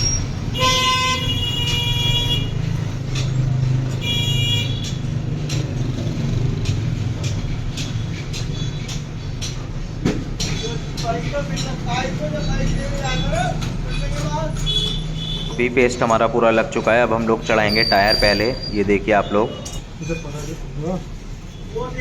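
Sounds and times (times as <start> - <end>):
low traffic rumble: 0.0 - 22.0
vehicle horn blasts: 0.5 - 2.6, 3.9 - 4.9.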